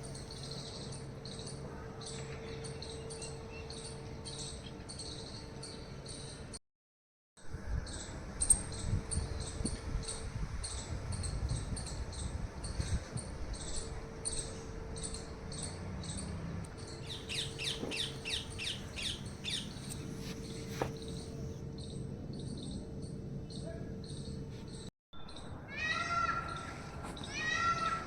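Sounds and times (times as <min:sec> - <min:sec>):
birds chirping: 0:07.9 - 0:22.9.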